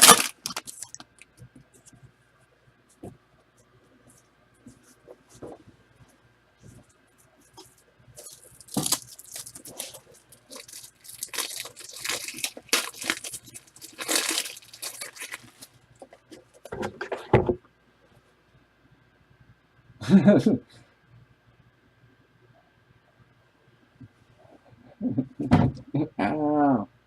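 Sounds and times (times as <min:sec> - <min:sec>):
plastic and foil wrapping tearing: 0:00.0 - 0:01.2, 0:08.2 - 0:16.2.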